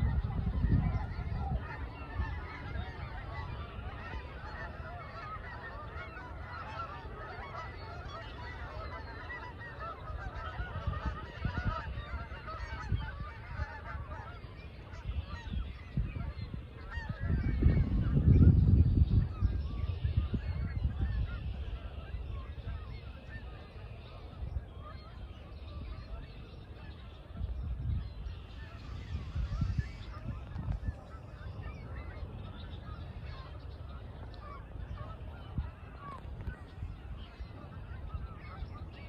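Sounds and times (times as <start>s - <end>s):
geese honking: 0.0s - 39.0s.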